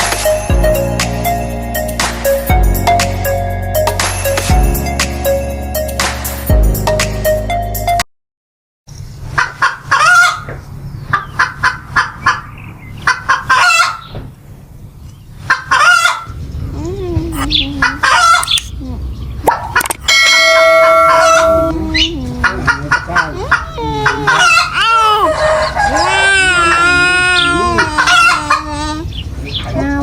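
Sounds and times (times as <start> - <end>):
chicken clucking and squawking: 9.4 - 14.1, 15.4 - 16.4, 17.3 - 20.3, 20.9 - 29.8.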